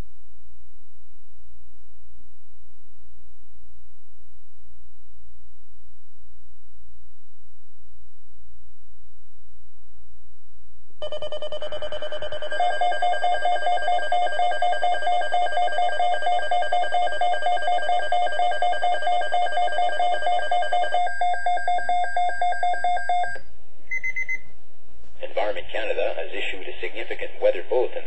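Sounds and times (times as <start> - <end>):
rapid pulsing electronic beep: 11.0 - 24.4.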